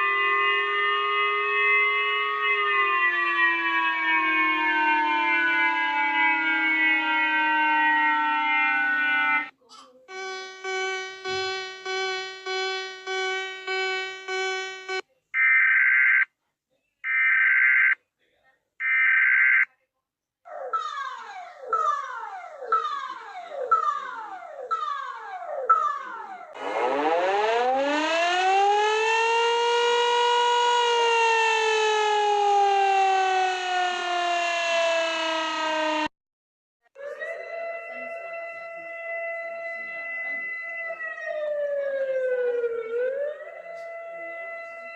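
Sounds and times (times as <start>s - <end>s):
warning siren wailing: 0.0s - 9.5s, 10.1s - 16.2s, 20.5s - 36.1s, 37.3s - 44.9s
chime-like alarm tone: 10.1s - 15.0s
harsh buzzer beeps: 10.1s - 15.6s.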